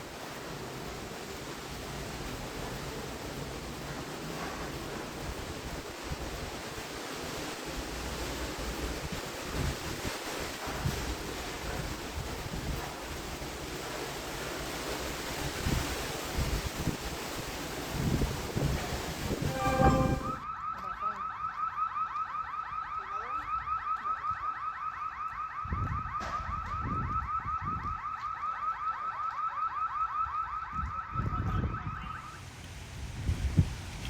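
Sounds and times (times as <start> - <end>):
wind buffeting microphone: 2.2 - 13.9, 15.2 - 20.3, 33.0 - 34.0.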